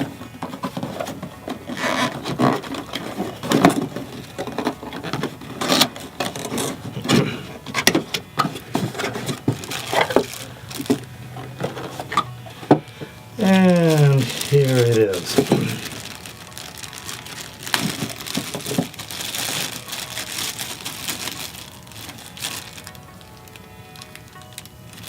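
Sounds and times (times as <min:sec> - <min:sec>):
cardboard box being handled: 0:00.0 - 0:23.0.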